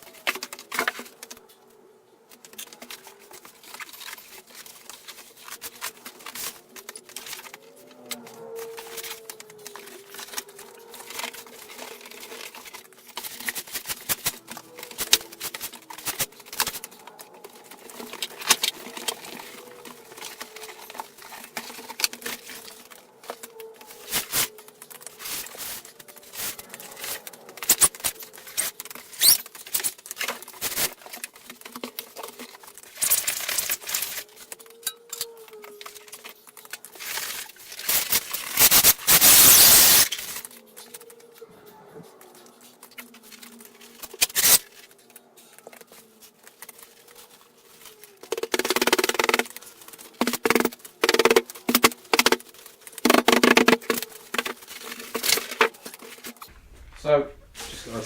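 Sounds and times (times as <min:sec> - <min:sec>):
cardboard box scraping and crackling: 0:02.4 - 0:34.7, 0:42.4 - 0:56.6
cardboard tearing: 0:02.5 - 0:34.6, 0:35.5 - 0:41.1, 0:42.8 - 0:44.9, 0:45.7 - 0:56.6.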